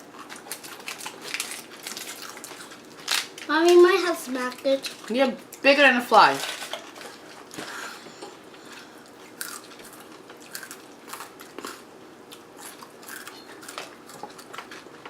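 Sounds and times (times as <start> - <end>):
person chewing crunchy food: 0.0 - 3.5, 6.6 - 15.0.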